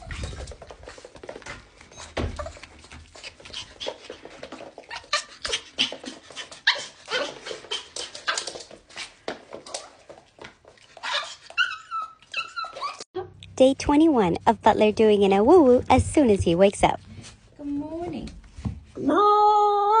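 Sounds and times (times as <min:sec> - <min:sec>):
dog yipping and whimpering: 0:04.8 - 0:08.6, 0:11.0 - 0:13.1
dog whining: 0:11.0 - 0:13.1.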